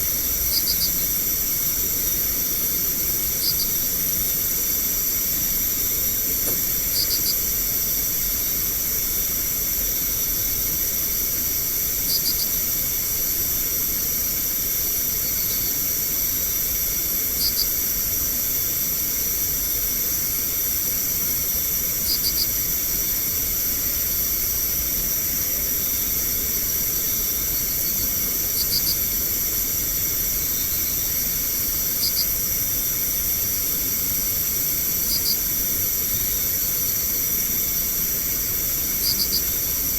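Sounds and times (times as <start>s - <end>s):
insect chirp of quick pips: 0.0s - 8.8s, 19.3s - 39.9s
insect chorus hissing: 0.0s - 39.9s.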